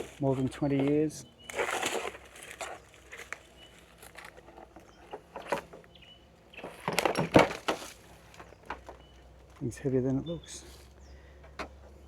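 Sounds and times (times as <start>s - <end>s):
rustles and scrapes: 0.0s - 5.8s, 6.6s - 9.7s.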